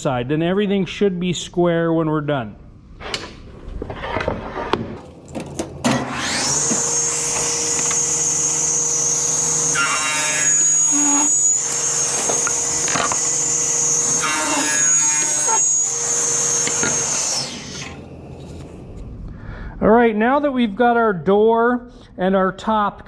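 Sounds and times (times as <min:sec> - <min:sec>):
table saw motor whining: 0:05.8 - 0:19.1.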